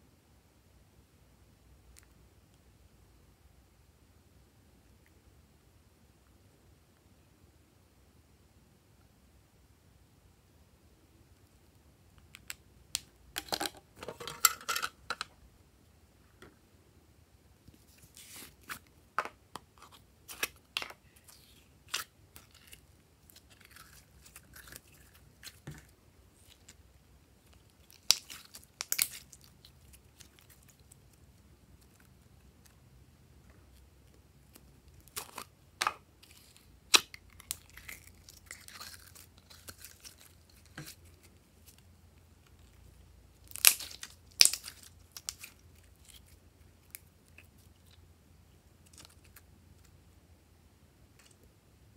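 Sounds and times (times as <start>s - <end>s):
slime crackling and popping: 27.4s - 31.1s, 43.4s - 47.6s.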